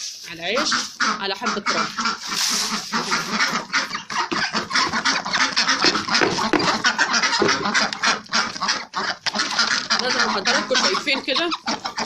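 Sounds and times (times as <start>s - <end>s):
bird calls: 0.3s - 12.0s
ducks pecking clicks: 0.3s - 12.0s.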